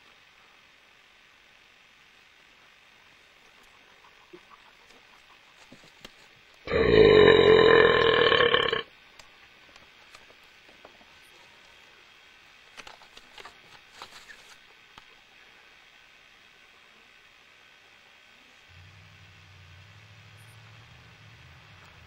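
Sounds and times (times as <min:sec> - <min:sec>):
loud belch: 0:06.7 - 0:08.9.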